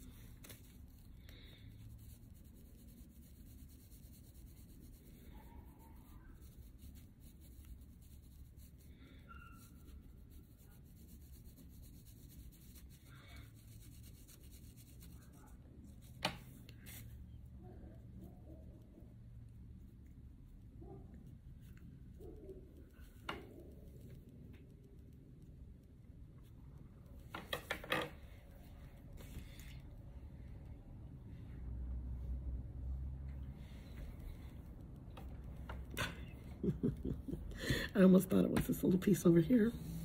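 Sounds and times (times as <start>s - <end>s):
hands rubbing craft materials: 0.0s - 17.4s
low steady hum: 0.0s - 27.5s.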